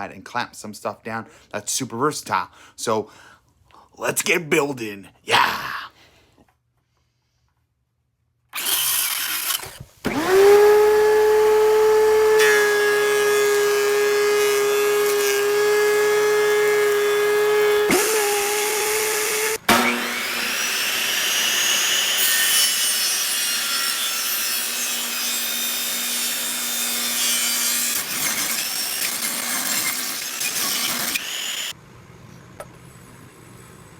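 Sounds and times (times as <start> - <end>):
power tool cutting wood: 8.5 - 31.7.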